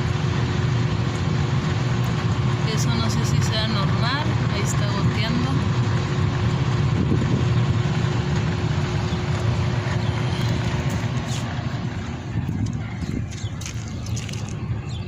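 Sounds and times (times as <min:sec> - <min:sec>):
cooler hum: 0:00.0 - 0:15.0
swamp cooler blower rushing: 0:03.6 - 0:14.9.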